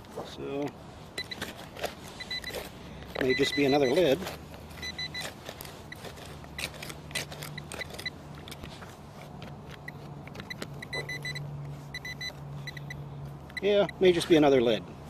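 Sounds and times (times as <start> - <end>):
digging in dirt: 0.0 - 15.0
metal detector beeps: 1.2 - 6.8, 7.4 - 8.2, 9.8 - 14.3.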